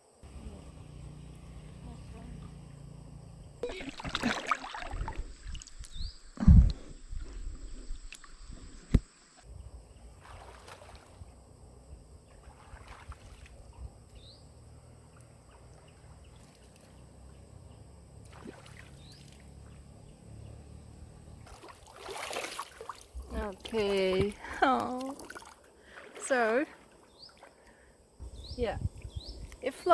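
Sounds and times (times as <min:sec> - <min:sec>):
low steady rumble: 0:00.2 - 0:03.6, 0:13.5 - 0:21.5
water swishing and sloshing: 0:03.6 - 0:20.0, 0:21.4 - 0:28.2.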